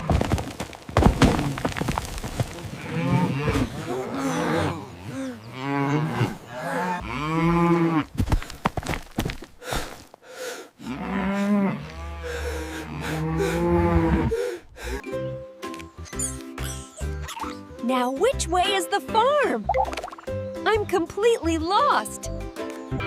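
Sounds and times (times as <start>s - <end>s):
cow mooing: 2.8s - 8.0s.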